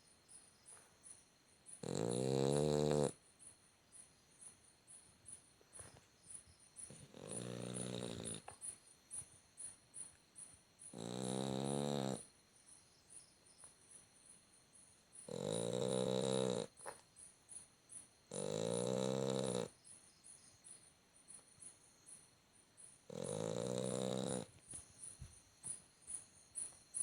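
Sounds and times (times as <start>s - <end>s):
dog snoring: 1.8s - 3.2s, 6.9s - 8.6s, 10.9s - 12.3s, 15.2s - 17.0s, 18.3s - 19.8s, 23.1s - 24.6s.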